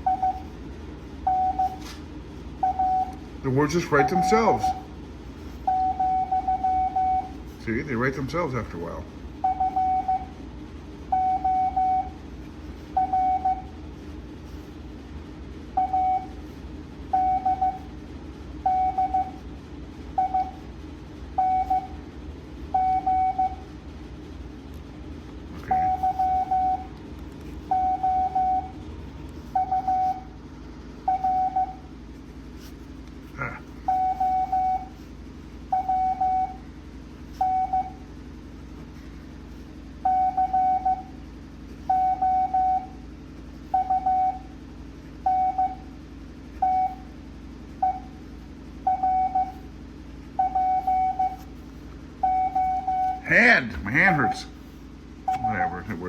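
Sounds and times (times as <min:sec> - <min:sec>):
morse code beeps: 0:00.0 - 0:00.6, 0:01.2 - 0:01.9, 0:02.6 - 0:10.4, 0:11.1 - 0:13.8, 0:15.7 - 0:16.5, 0:17.1 - 0:17.9, 0:18.6 - 0:19.4, 0:20.2 - 0:20.7, 0:21.4 - 0:22.0, 0:22.7 - 0:23.7, 0:25.6 - 0:26.9, 0:27.6 - 0:28.8, 0:29.4 - 0:30.4, 0:31.0 - 0:31.9, 0:32.6 - 0:38.1, 0:40.0 - 0:43.1, 0:43.7 - 0:44.6, 0:45.2 - 0:49.7, 0:50.3 - 0:56.0.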